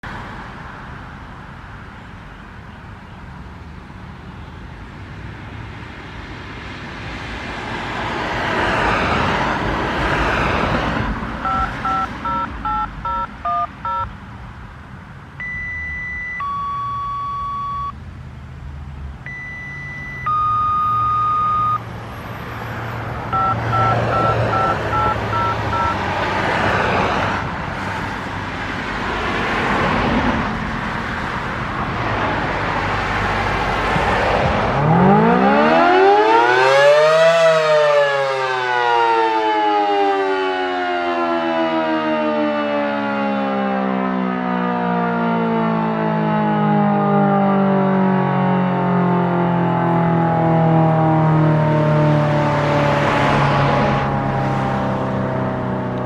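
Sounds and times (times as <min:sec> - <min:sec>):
cars passing: 0:00.0 - 0:56.0
long paging tones: 0:11.4 - 0:14.1, 0:15.4 - 0:18.0, 0:19.3 - 0:21.8, 0:23.3 - 0:26.0
touch-tone beeps: 0:11.4 - 0:14.1, 0:15.4 - 0:18.0, 0:19.3 - 0:21.8, 0:23.3 - 0:26.0.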